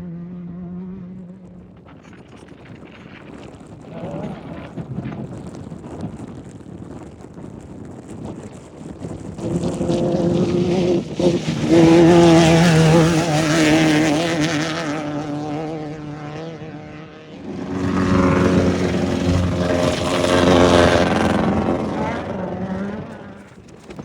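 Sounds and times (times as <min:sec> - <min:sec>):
off-road vehicles racing past: 0:03.8 - 0:04.8, 0:09.3 - 0:23.7.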